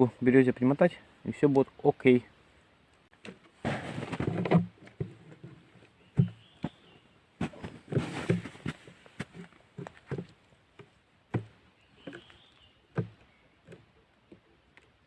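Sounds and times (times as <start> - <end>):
rustling: 3.1 - 10.9
bottle handling clicks and knocks: 4.1 - 6.8, 9.8 - 14.5.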